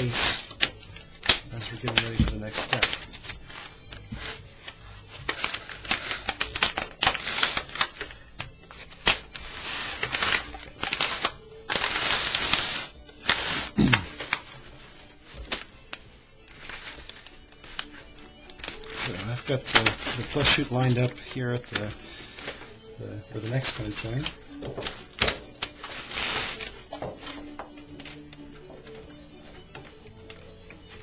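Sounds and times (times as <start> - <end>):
metal scraping: 18.7 - 29.0.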